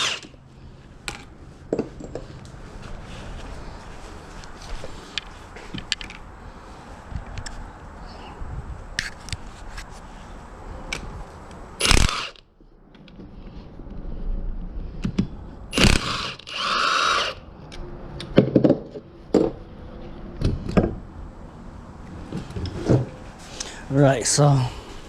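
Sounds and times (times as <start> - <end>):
noisy tool burst: 0.0 - 0.3, 11.8 - 12.4, 15.7 - 17.4.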